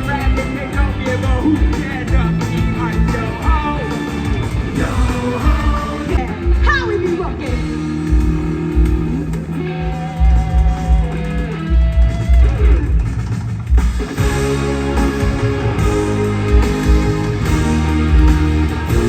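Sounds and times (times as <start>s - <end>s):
guitar rock music: 0.0s - 19.0s.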